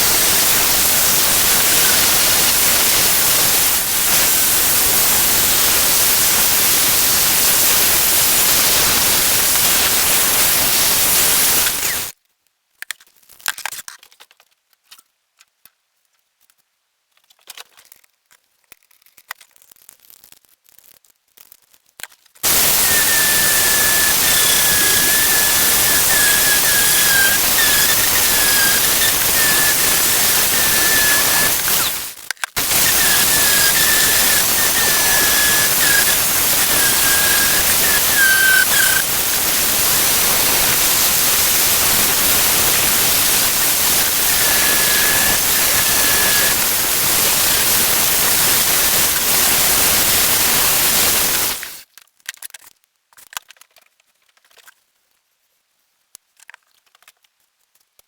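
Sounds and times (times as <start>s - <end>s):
high whine: 0.0s - 12.1s, 22.4s - 51.8s
power tool hissing: 0.0s - 12.1s, 22.4s - 51.8s.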